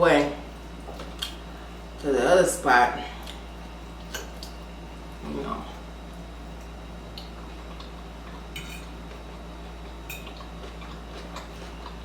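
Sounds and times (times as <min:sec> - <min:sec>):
steady low hum: 0:00.0 - 0:12.0
cutlery clinking against a dish: 0:08.6 - 0:08.9, 0:10.1 - 0:10.5.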